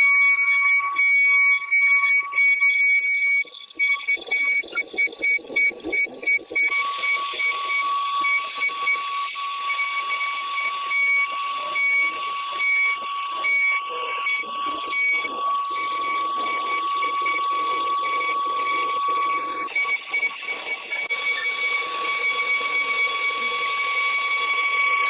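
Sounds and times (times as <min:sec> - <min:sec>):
router spindle whine: 0:00.0 - 0:25.0.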